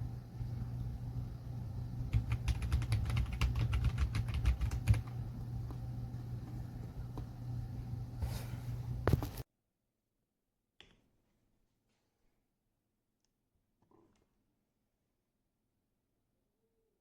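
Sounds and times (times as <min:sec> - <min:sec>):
low hum: 0:00.0 - 0:09.4
mechanical keyboard typing: 0:02.1 - 0:05.2.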